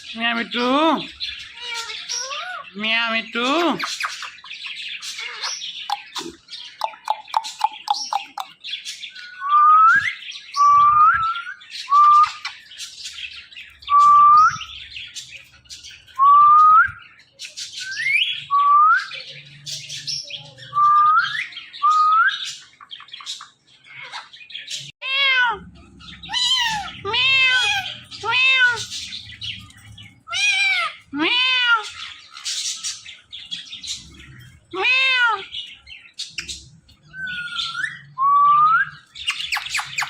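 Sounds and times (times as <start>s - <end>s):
parrot chatter and squawks: 0.0s - 9.4s, 19.2s - 38.2s, 38.9s - 40.0s
parrot meow-like calls: 25.0s - 25.7s, 26.3s - 28.9s, 30.3s - 32.1s, 34.7s - 35.5s.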